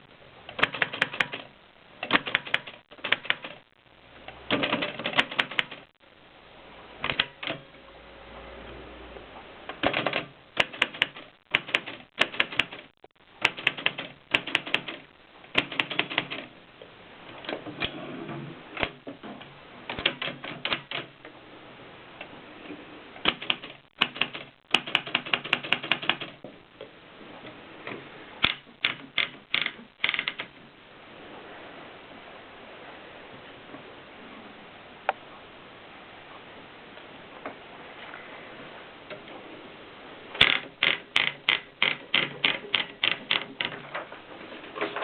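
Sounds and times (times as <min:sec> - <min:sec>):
typewriter clacking: 0:00.5 - 0:03.6, 0:04.5 - 0:05.9, 0:07.0 - 0:07.6, 0:09.7 - 0:16.5, 0:19.9 - 0:21.1, 0:23.2 - 0:26.4, 0:28.4 - 0:30.6, 0:40.4 - 0:43.8.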